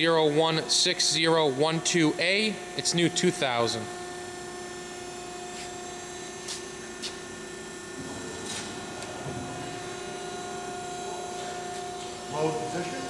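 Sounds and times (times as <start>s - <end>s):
punch press humming: 0.0s - 13.0s.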